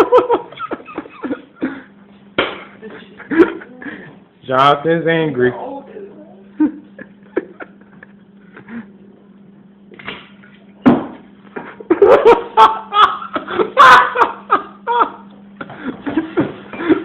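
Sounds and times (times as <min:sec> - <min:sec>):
person laughing loudly: 0:00.0 - 0:01.9, 0:03.0 - 0:04.0, 0:06.6 - 0:08.9, 0:11.8 - 0:17.0.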